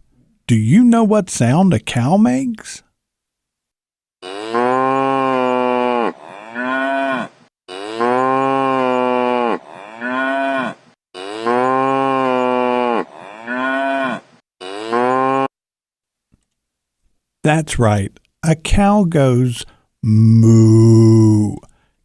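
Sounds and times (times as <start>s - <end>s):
cow mooing: 4.2s - 15.5s.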